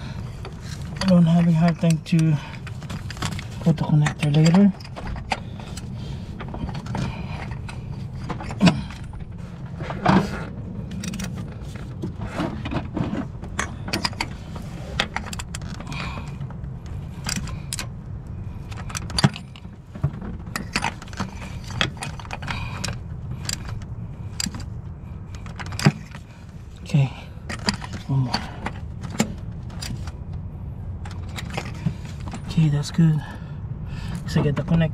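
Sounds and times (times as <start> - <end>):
steady low hum: 0.0 - 34.9
metal tools clinking: 0.6 - 6.0.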